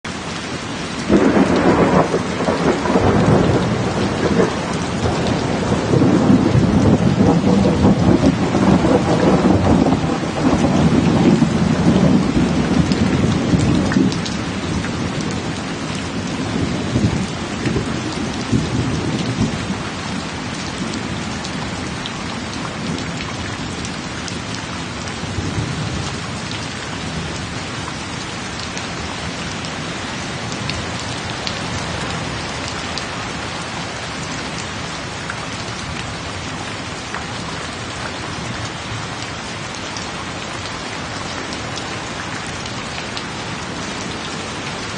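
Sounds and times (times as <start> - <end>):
heavy rain falling: 0.0 - 44.9
rolling thunder rumble: 1.0 - 19.8.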